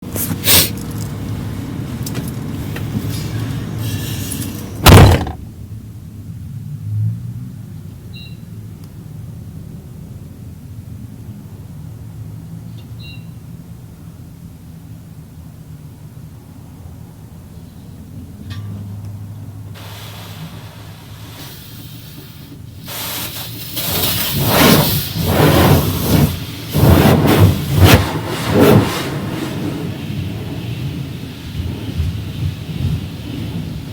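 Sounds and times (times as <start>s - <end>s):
water spraying against truck: 0.0s - 5.4s, 19.7s - 33.9s
loud thump: 4.8s - 5.5s.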